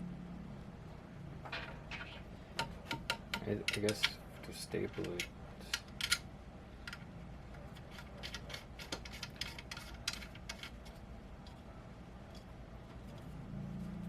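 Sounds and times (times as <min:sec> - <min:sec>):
light clicks of metal parts handled: 0:02.6 - 0:06.2.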